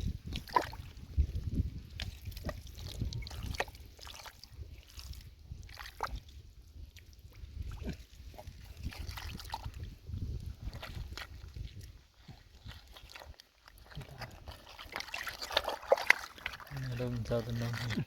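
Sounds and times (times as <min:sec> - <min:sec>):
mud squelching and sloshing: 0:00.0 - 0:18.0.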